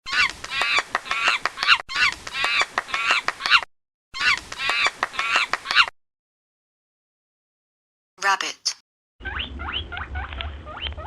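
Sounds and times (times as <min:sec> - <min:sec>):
monkey calling: 0:04.2 - 0:05.9.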